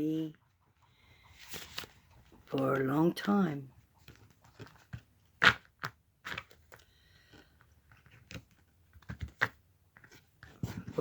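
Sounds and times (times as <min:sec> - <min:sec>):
cards clicking and crackling: 0:04.0 - 0:10.6.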